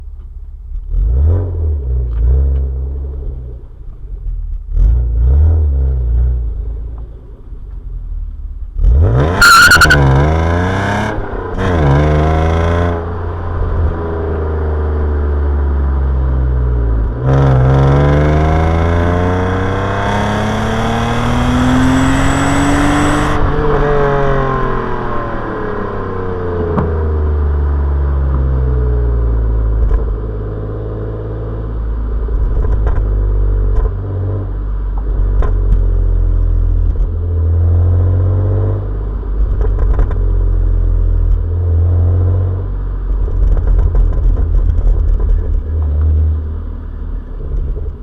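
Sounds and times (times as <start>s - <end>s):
car engine revving: 8.7s - 27.9s.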